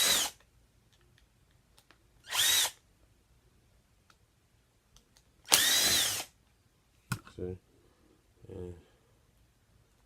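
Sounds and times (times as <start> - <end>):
power tool whine: 5.5 - 6.3.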